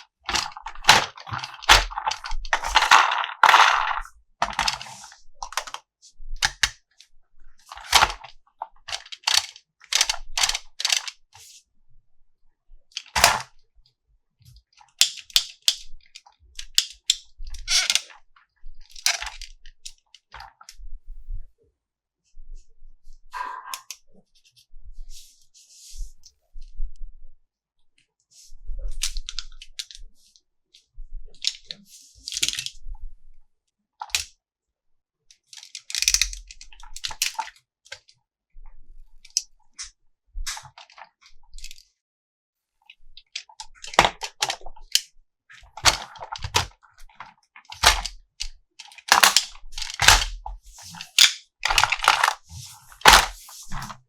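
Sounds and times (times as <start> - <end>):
plastic packaging crinkling: 0.3 - 5.6, 49.0 - 53.9
plastic toy parts clicking: 0.3 - 5.8, 6.4 - 6.8, 7.7 - 11.2, 13.0 - 13.5, 14.9 - 18.2, 18.9 - 20.6, 31.4 - 32.8, 34.0 - 34.3, 35.5 - 38.1, 43.2 - 54.0.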